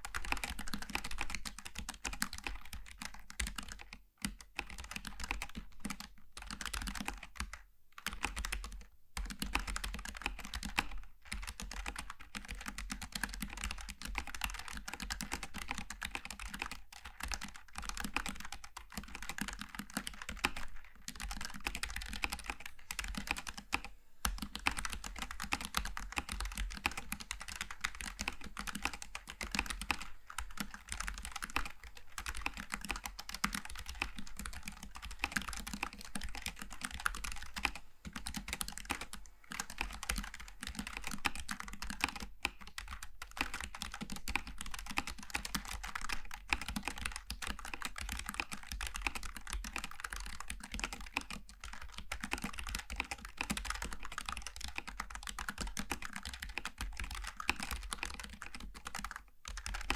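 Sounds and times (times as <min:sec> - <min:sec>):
fast mechanical keyboard typing: 0:00.0 - 0:59.9.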